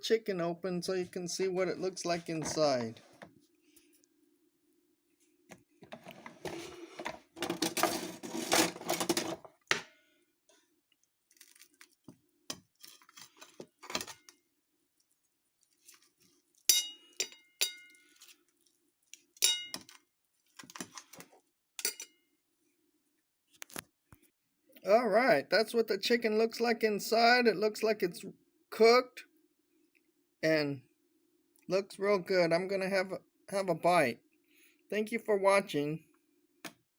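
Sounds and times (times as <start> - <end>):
cutlery clinking on plate: 16.7 - 18.0, 19.4 - 19.9, 21.8 - 22.2.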